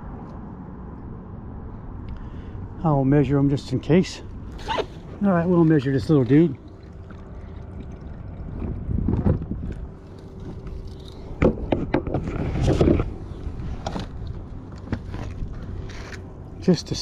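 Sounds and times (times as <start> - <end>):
wind rumble on microphone: 7.4 - 16.6.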